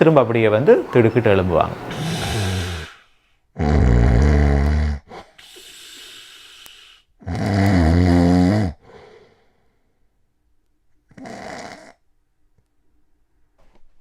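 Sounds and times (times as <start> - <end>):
soft breath out: 0.7 - 3.4, 5.4 - 7.0
person snoring: 1.8 - 3.0, 3.6 - 9.0.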